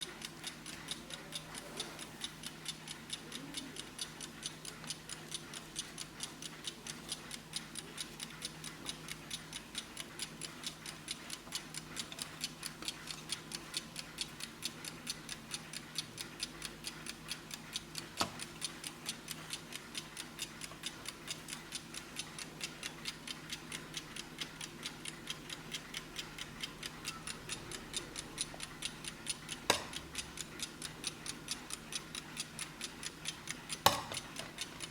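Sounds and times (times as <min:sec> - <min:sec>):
alarm clock ticking: 0:00.0 - 0:34.9.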